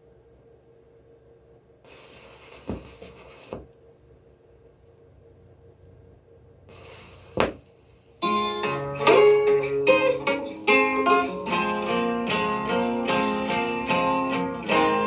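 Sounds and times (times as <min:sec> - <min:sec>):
record surface hiss: 0:00.0 - 0:15.0
plucked acoustic guitar: 0:08.2 - 0:15.0.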